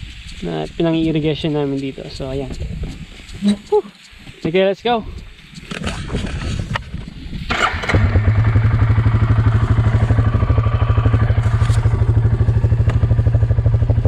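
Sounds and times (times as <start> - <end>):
motorbike engine running: 7.5 - 14.0.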